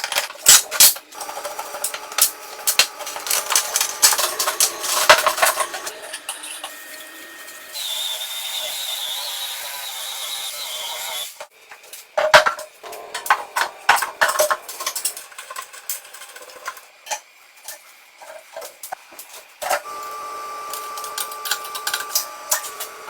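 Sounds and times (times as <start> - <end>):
faint high whistle: 6.8 - 11.1.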